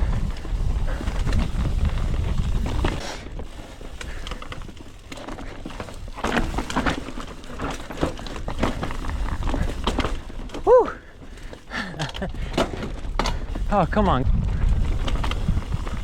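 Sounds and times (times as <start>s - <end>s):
wind buffeting microphone: 0.0s - 4.8s, 12.2s - 16.0s
bike clattering over rocks: 0.1s - 16.0s.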